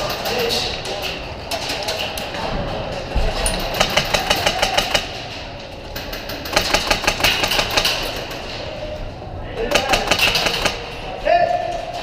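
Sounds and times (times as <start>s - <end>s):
airsoft guns rapid firing: 3.6s - 5.2s, 6.3s - 8.3s, 9.7s - 10.9s.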